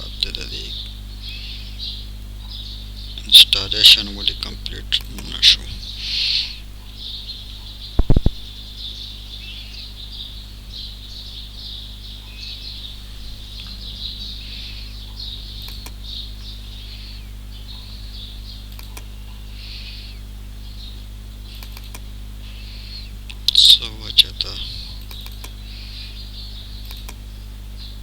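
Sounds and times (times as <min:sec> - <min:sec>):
electrical hum: 0:00.0 - 0:28.0
small birds chirping: 0:00.0 - 0:28.0
sharp clicks: 0:04.4 - 0:05.7, 0:08.0 - 0:08.5, 0:15.6 - 0:16.5, 0:18.7 - 0:19.4, 0:21.5 - 0:22.1, 0:23.3 - 0:25.6, 0:26.8 - 0:27.2.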